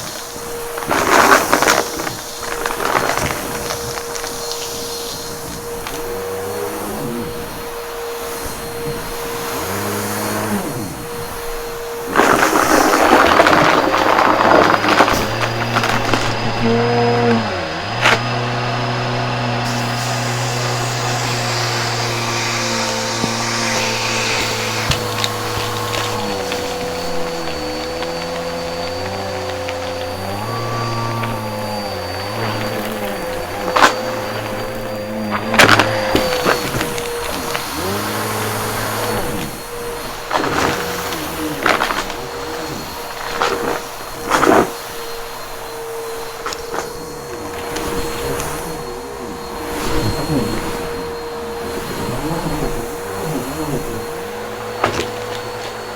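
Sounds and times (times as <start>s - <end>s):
brush roll crunching debris: 0.0s - 55.9s
vacuum cleaner running: 0.0s - 55.9s.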